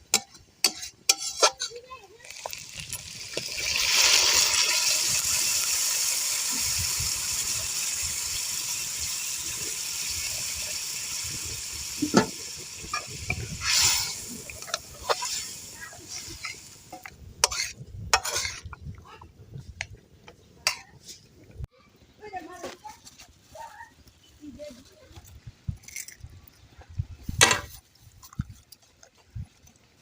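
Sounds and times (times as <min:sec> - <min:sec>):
food sizzling in a pot: 0:00.1 - 0:20.0.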